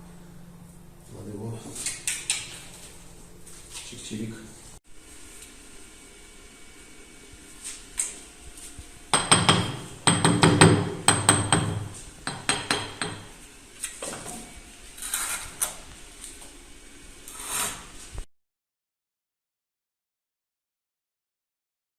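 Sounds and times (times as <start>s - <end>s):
hammer striking brick: 9.2s - 13.3s.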